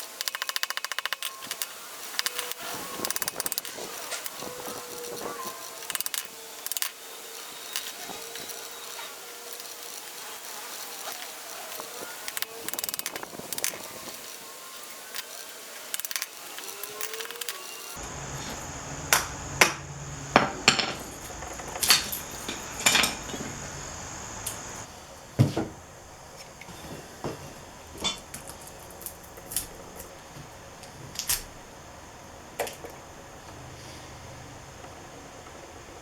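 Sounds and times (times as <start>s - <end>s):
steady low hum: 18.0s - 26.6s
metal clanks and knocks: 19.1s - 23.8s.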